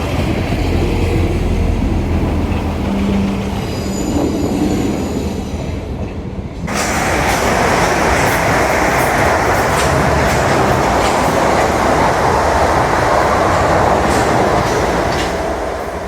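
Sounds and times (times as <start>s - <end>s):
low station rumble: 0.0s - 16.0s
train rushing past: 0.0s - 16.0s
wheels clicking over rail joints: 6.0s - 16.0s.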